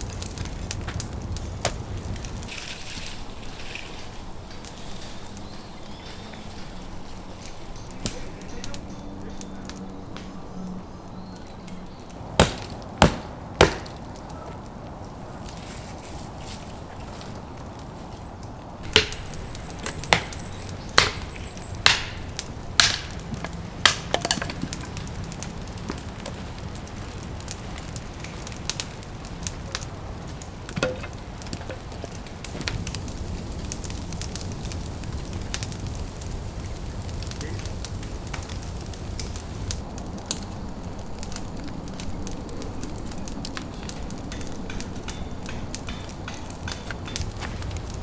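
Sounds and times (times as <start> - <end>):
axe strikes chopping wood: 12.4 - 14.0, 18.8 - 24.7
wood knocks and cracks: 12.4 - 14.6, 18.8 - 26.6, 27.5 - 34.4, 43.5 - 48.0.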